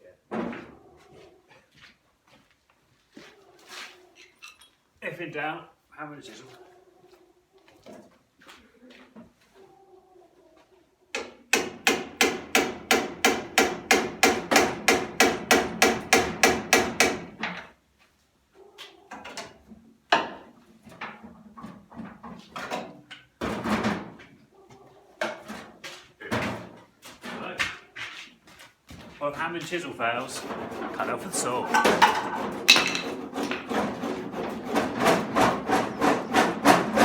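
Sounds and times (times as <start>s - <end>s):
hammer striking chisel: 11.2s - 17.4s.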